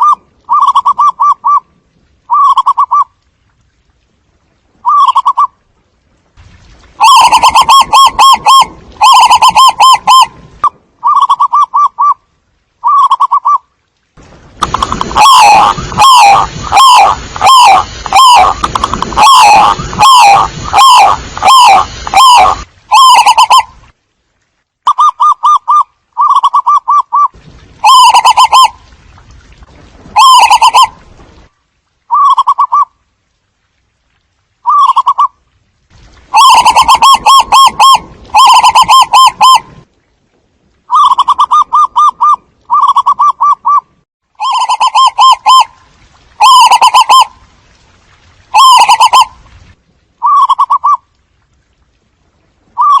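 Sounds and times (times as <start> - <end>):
doves cooing: 14.6 - 23.6, 36.3 - 39.6, 48.6 - 49.3.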